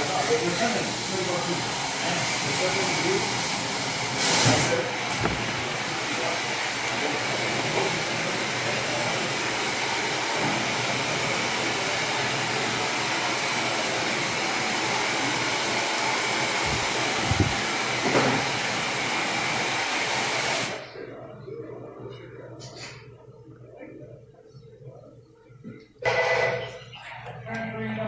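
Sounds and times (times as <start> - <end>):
electric blower motor running: 2.6 - 20.8.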